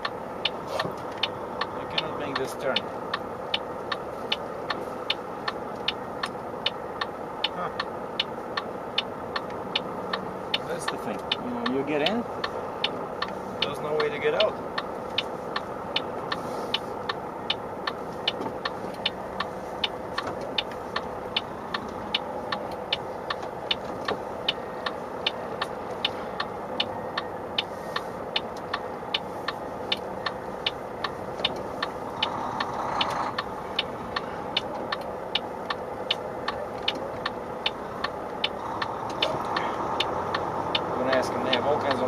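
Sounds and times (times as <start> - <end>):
truck diesel engine running: 0.0 - 42.0
turn indicator ticking: 0.0 - 42.0.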